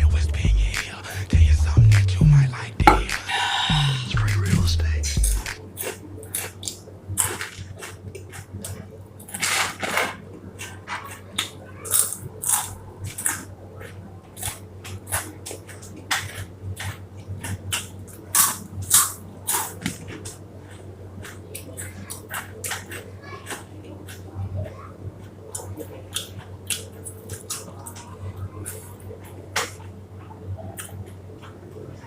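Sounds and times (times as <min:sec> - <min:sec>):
steady low hum: 0:00.0 - 0:06.3
person chewing crunchy snack: 0:02.9 - 0:09.5, 0:11.9 - 0:13.4, 0:14.4 - 0:19.8.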